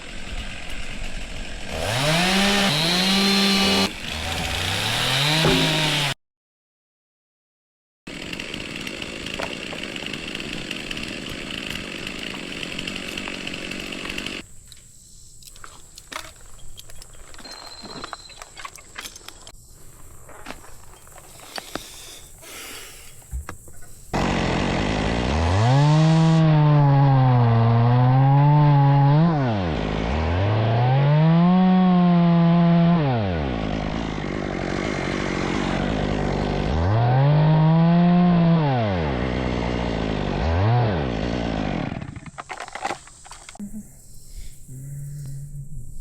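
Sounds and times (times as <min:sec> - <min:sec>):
chainsaw engine revving: 0:00.0 - 0:06.2, 0:08.1 - 0:14.4, 0:24.2 - 0:43.0.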